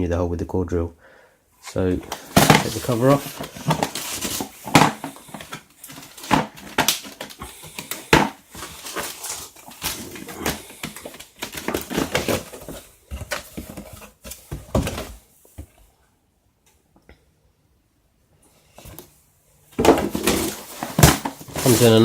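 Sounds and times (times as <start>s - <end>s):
packaging rustling and clicking: 2.0s - 15.2s, 19.8s - 22.0s.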